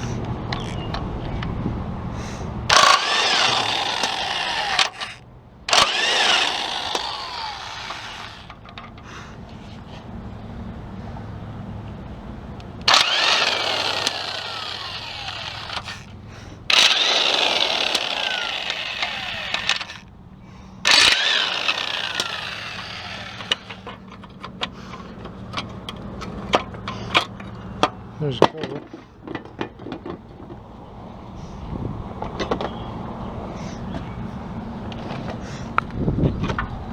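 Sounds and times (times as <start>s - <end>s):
power tool bursts: 2.7s - 8.6s, 12.9s - 16.1s, 16.7s - 20.0s, 20.9s - 24.0s
sharp clicks: 2.7s - 8.6s, 12.8s - 16.1s, 16.7s - 20.0s, 20.9s - 24.0s.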